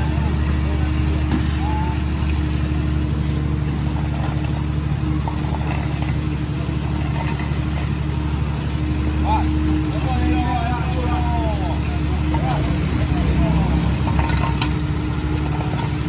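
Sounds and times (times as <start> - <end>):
diesel machinery engines running: 0.0 - 16.0.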